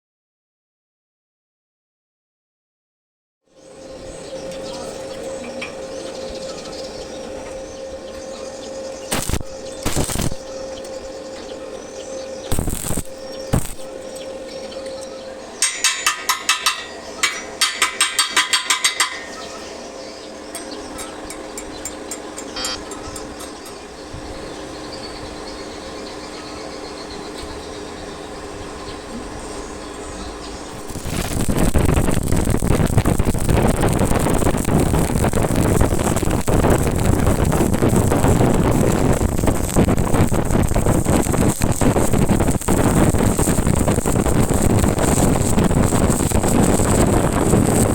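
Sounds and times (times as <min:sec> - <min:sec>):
welding arc crackling: 0:08.9 - 0:11.1, 0:12.3 - 0:24.0, 0:30.3 - 0:47.9
hammer striking steel: 0:15.6 - 0:19.9, 0:20.5 - 0:24.0.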